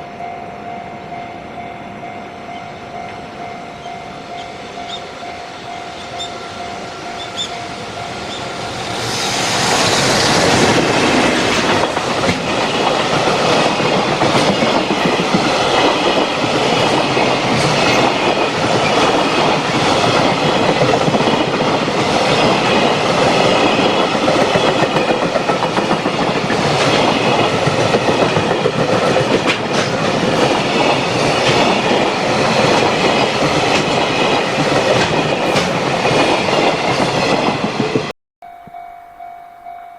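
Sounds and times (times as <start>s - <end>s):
locomotive rushing past: 2.6s - 38.1s.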